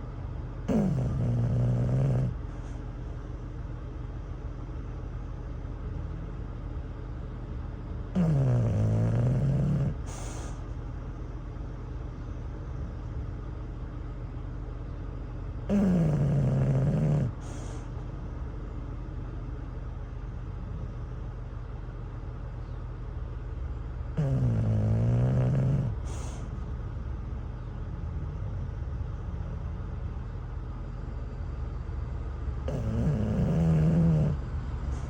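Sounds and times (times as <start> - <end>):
dog snoring: 0.6 - 2.8, 8.1 - 10.7, 15.7 - 17.9, 24.1 - 26.6, 32.6 - 35.0
idling vehicles rumble: 26.4 - 32.6.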